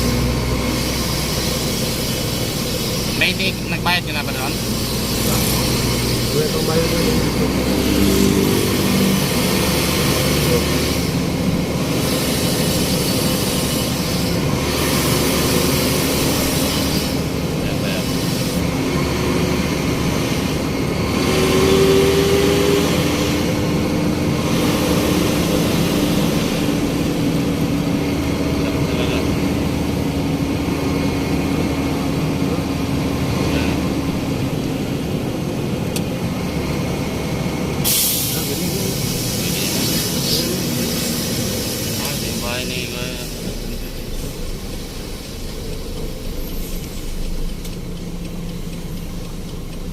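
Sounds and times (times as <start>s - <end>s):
truck engine running: 0.0s - 49.9s
hiss: 37.8s - 43.5s.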